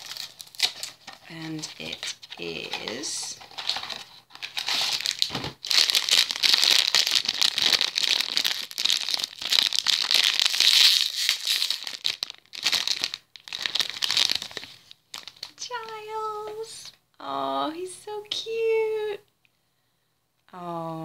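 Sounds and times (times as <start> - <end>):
packaging crinkling and tearing: 0.0 - 16.0.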